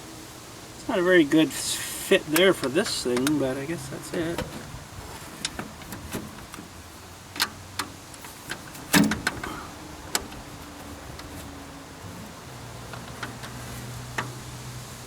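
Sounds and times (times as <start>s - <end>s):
loud metal clunk: 8.8s - 9.6s.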